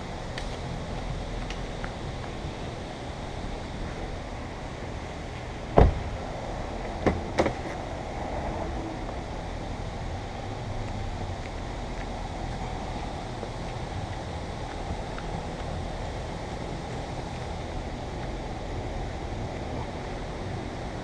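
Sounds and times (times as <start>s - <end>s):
steady background hum: 0.0s - 21.0s
loud thump: 5.8s - 6.1s.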